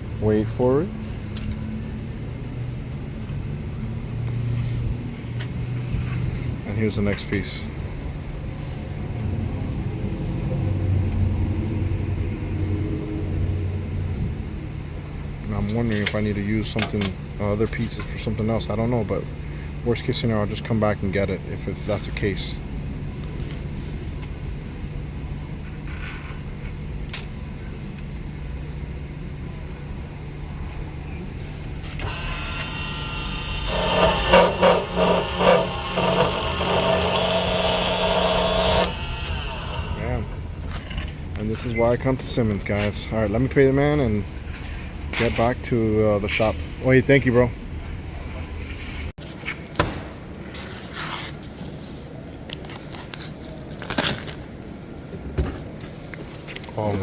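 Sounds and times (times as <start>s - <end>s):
shop machinery hum: 0.0s - 57.0s
low machine hum: 27.1s - 43.5s
power saw cutting metal tubing: 32.0s - 40.6s.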